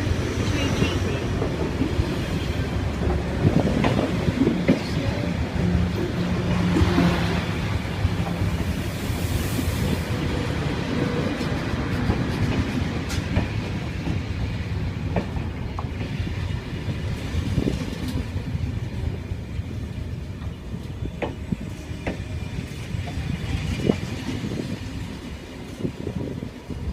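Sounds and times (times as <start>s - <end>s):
rail clicks and knocks: 0.0s - 8.9s, 9.5s - 26.5s
train rumbling on rails: 0.0s - 26.9s.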